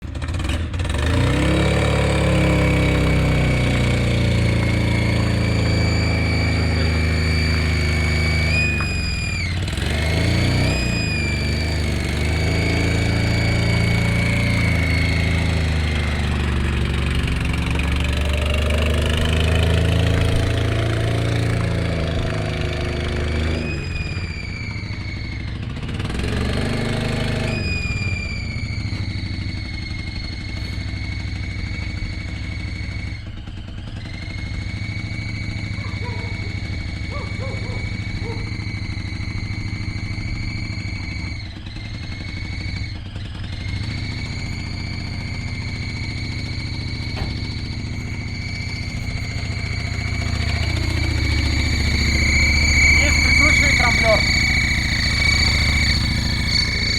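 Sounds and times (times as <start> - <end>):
car engine running: 0.0 - 56.9
high intake whistle: 0.8 - 56.9.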